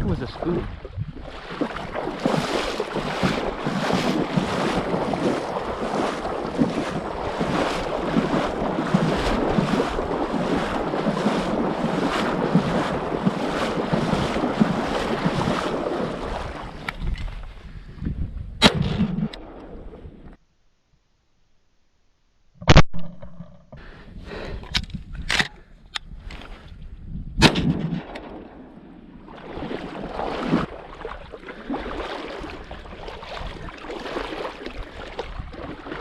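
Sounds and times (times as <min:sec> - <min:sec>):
water sloshing and splashing: 0:00.0 - 0:17.6, 0:29.0 - 0:36.0.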